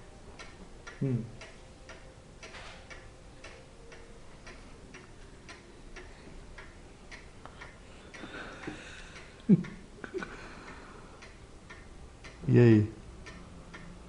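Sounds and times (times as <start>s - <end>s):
clock ticking: 0.1s - 14.0s.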